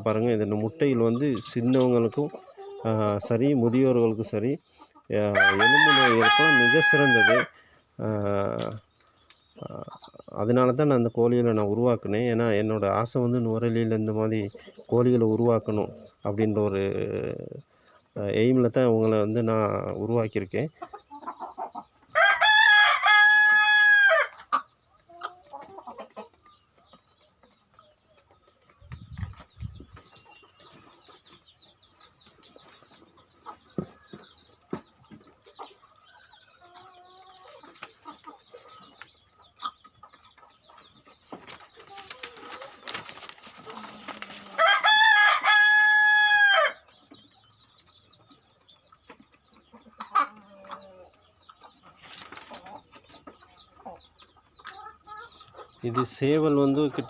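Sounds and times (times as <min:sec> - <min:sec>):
hens clucking and chirping: 0:00.0 - 0:57.0
rooster crowing: 0:05.3 - 0:07.5, 0:22.2 - 0:24.3, 0:44.5 - 0:46.8.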